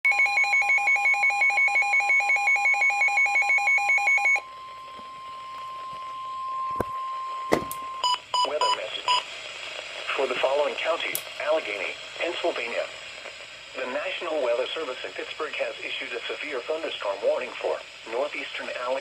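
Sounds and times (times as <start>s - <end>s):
steady warning alarm tone: 0.1s - 9.2s
rapid receiver alert beeps: 6.0s - 9.3s.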